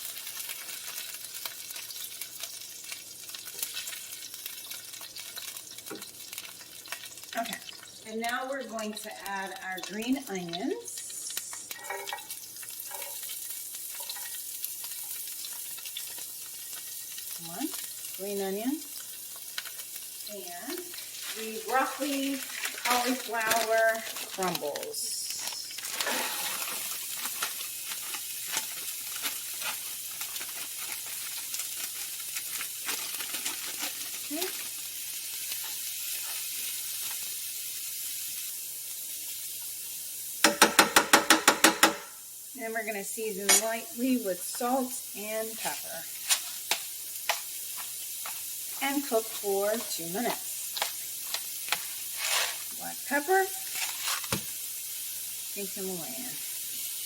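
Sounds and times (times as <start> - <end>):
green onions sizzling in a pan: 0.0 - 57.0
utensil clicking against pan: 40.4 - 42.1.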